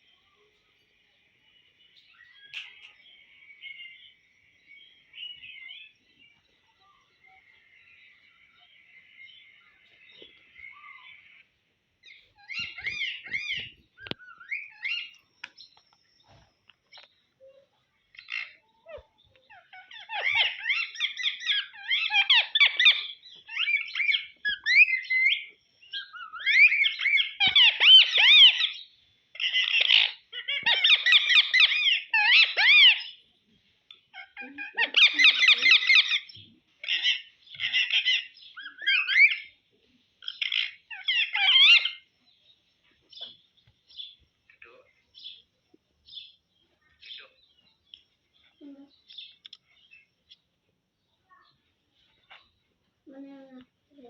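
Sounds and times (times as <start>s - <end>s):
parakeet chattering: 34.1s - 39.5s.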